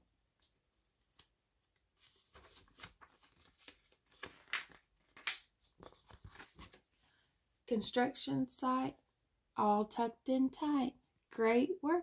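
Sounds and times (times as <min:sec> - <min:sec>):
book pages turning: 0:01.0 - 0:07.2.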